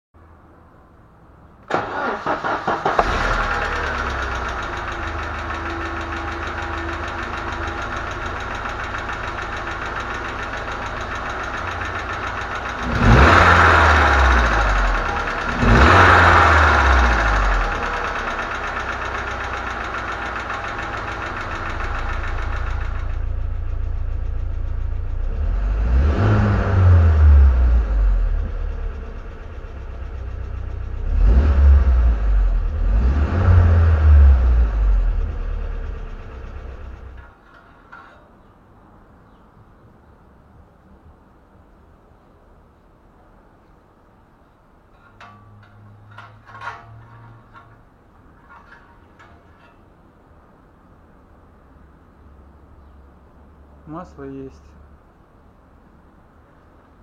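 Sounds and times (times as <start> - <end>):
petrol engine idling: 0.4 - 25.8, 26.6 - 33.0, 33.6 - 57.0
engine revving: 1.7 - 37.2.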